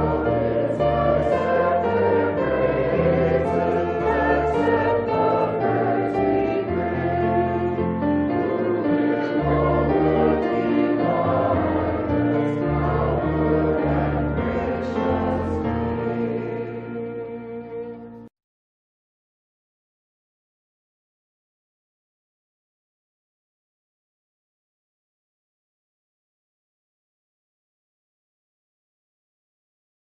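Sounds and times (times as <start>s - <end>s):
choir singing a hymn: 0.0s - 18.2s.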